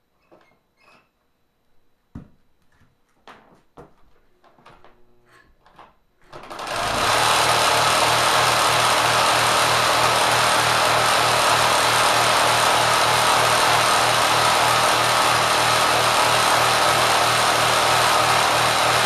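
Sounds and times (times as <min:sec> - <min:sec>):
sewing machine motor running fast: 0:06.3 - 0:19.0.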